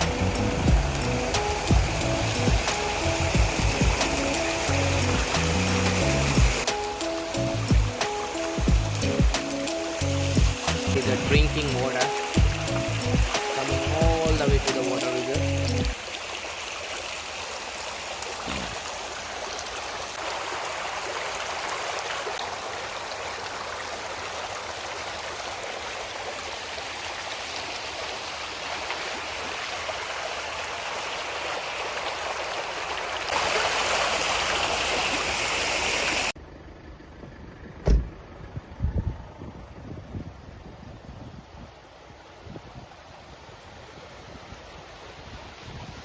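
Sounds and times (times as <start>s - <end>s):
overflow water rushing: 0.0s - 36.4s, 41.5s - 46.0s
thump: 37.8s - 38.1s.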